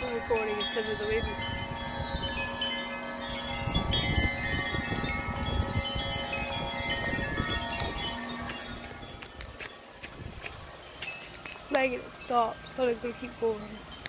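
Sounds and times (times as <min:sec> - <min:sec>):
wind chimes ringing: 0:00.0 - 0:14.0
wind rumble in microphone: 0:03.5 - 0:10.8.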